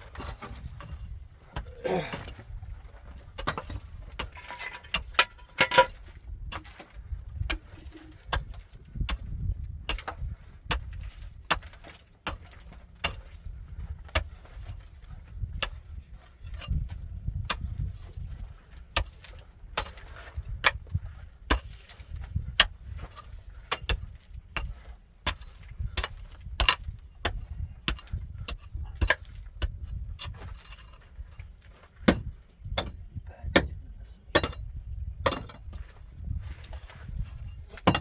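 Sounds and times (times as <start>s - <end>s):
tools clinking and knocking: 3.4s - 6.7s.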